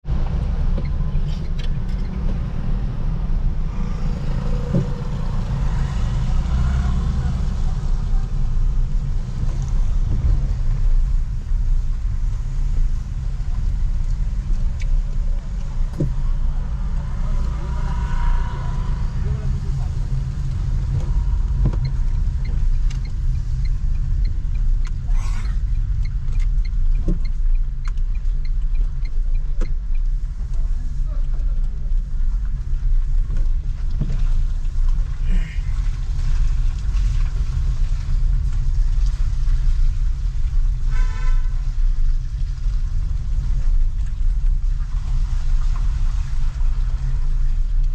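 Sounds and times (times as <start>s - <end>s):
heavy low rumble: 0.0s - 47.9s
vehicles passing: 0.0s - 47.9s
rain hissing: 2.6s - 24.4s.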